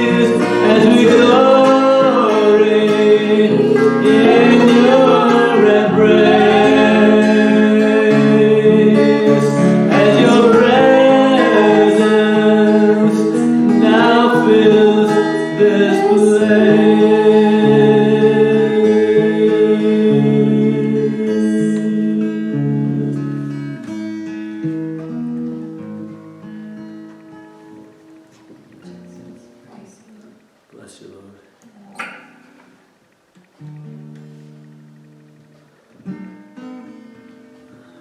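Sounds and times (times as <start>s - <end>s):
sustained chords: 0.0s - 23.9s
people singing worship music: 0.0s - 24.8s
guitar: 0.0s - 30.9s, 31.5s - 38.0s.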